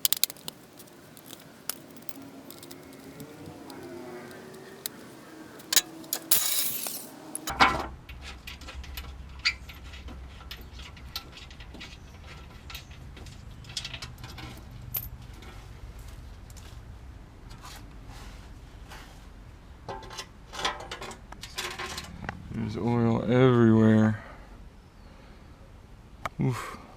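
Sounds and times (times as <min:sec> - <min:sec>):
metal tools clattering: 0:00.0 - 0:05.0, 0:05.6 - 0:07.5
steady low hum: 0:21.4 - 0:26.2.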